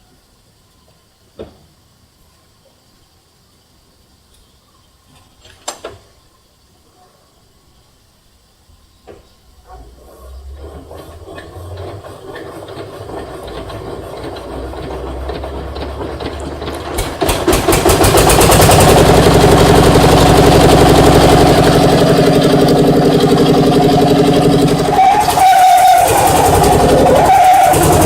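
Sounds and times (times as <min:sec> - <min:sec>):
engine rumbling: 0:09.6 - 0:28.0.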